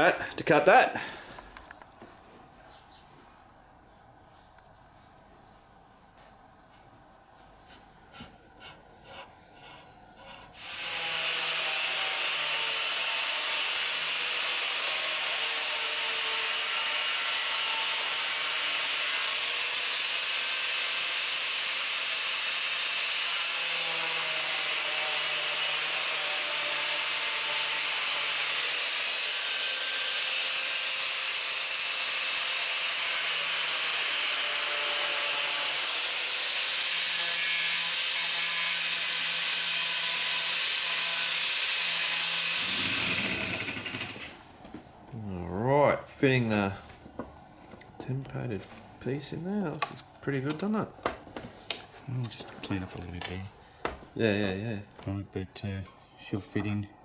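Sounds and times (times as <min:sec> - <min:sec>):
power tool whining: 0:10.2 - 0:44.7.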